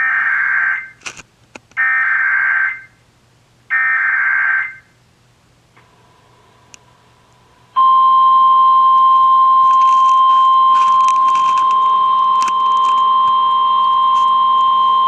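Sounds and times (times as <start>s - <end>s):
static crackles: 0.0s - 1.9s, 9.6s - 15.0s
loud steady alarm beep: 7.8s - 15.0s.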